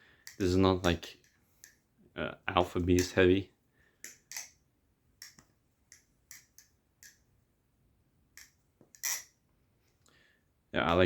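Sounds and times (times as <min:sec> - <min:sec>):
balisong handles clicking: 0:00.1 - 0:01.9, 0:04.0 - 0:04.6, 0:05.2 - 0:07.3.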